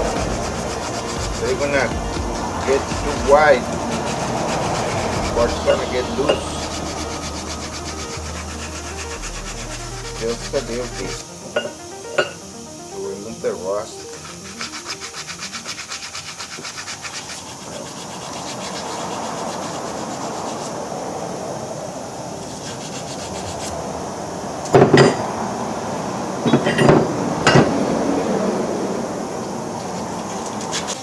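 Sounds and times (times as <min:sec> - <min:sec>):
hand sanding metal: 0:00.0 - 0:11.2, 0:13.9 - 0:20.9, 0:22.5 - 0:23.8, 0:29.8 - 0:31.0.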